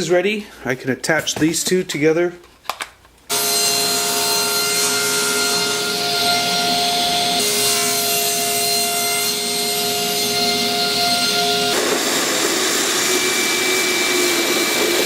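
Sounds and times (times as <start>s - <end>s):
power tool motor whine: 3.3s - 15.0s.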